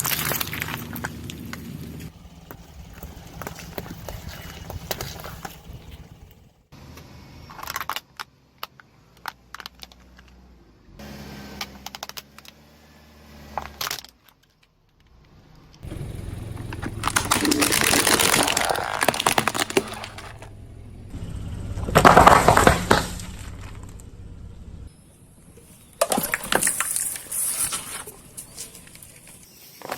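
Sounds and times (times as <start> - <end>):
objects crunching under car tyre: 0.0 - 6.3, 13.4 - 21.1, 21.7 - 24.2, 24.8 - 29.9.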